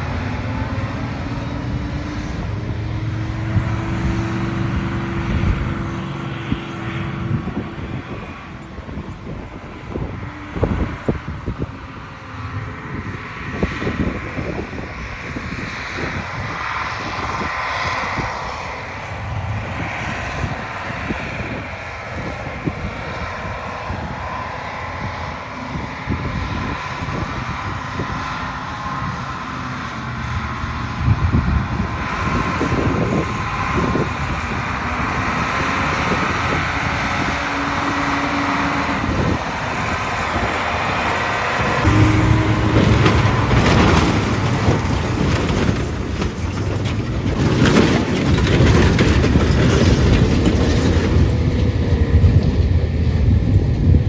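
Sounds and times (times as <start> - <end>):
tractor engine running: 0.0 - 54.0
loud knocks and jolts: 41.6 - 52.4.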